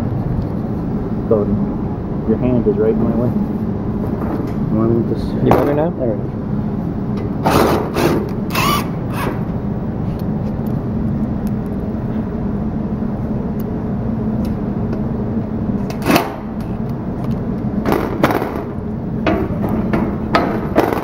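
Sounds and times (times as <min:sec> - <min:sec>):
mechanical hum: 0:00.0 - 0:21.0
sharp knocks: 0:17.8 - 0:21.0.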